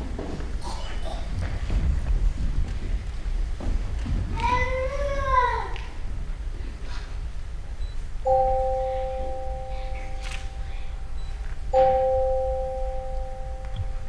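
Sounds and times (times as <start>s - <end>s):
tone chimes ringing: 8.2s - 14.0s.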